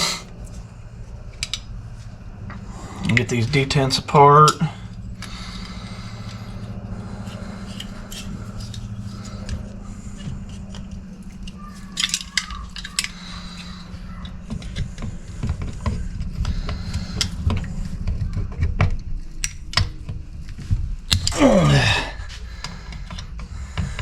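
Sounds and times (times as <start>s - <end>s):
low hum: 0.0s - 24.0s
metal tools clicking and clinking: 7.2s - 14.7s.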